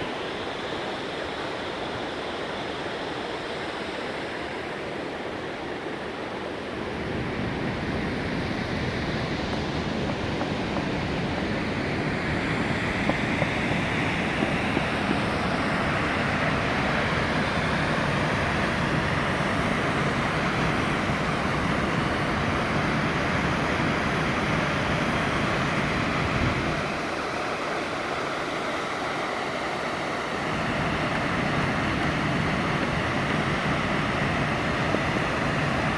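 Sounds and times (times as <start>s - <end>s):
wind rumble on microphone: 6.8s - 27.2s, 30.4s - 35.9s
waterfall roaring: 7.4s - 35.9s.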